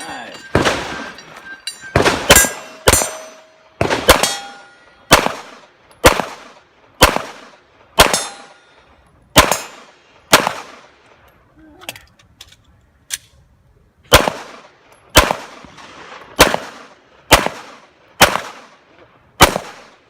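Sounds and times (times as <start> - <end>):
metallic ring of steel targets: 0.0 - 5.1, 8.1 - 8.9
pistol shots: 0.5 - 1.2, 1.9 - 8.6, 9.3 - 10.9, 14.1 - 18.8, 19.4 - 20.0.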